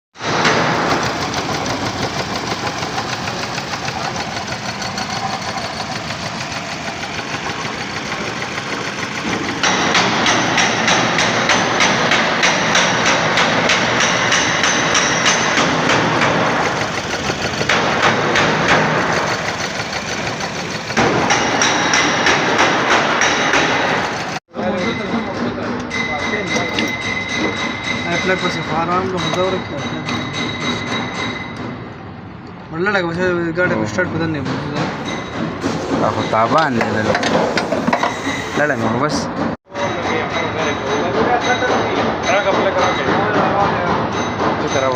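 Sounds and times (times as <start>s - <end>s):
fast even engine ticking: 0.2s - 24.4s
car engine running: 0.6s - 11.5s, 15.7s - 24.4s.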